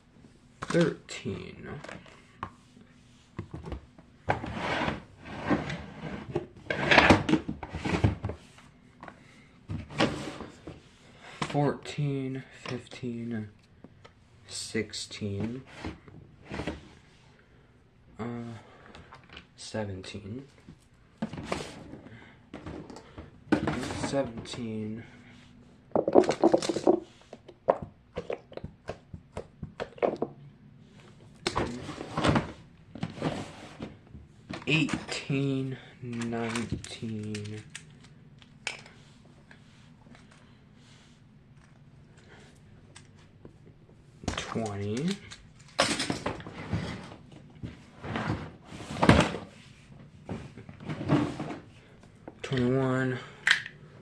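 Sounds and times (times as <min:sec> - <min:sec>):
plastic toys clicking and clattering: 0:26.0 - 0:27.0, 0:36.1 - 0:38.1, 0:44.3 - 0:46.2
fidget toys rustling and scraping: 0:26.2 - 0:27.5.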